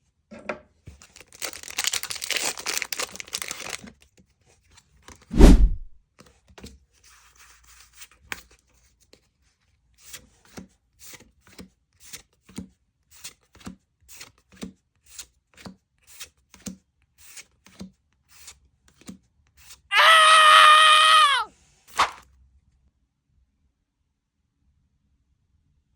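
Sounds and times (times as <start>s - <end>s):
drawn-out voice-like cry: 19.9s - 21.5s.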